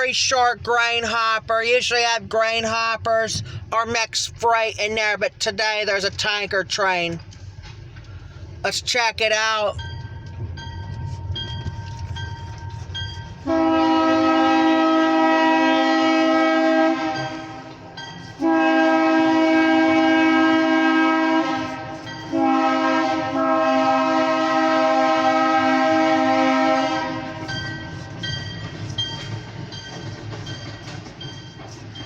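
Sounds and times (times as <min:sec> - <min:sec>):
low rumble of train: 0:00.0 - 0:32.0
locomotive air horn blasts: 0:13.4 - 0:17.8, 0:18.4 - 0:27.9.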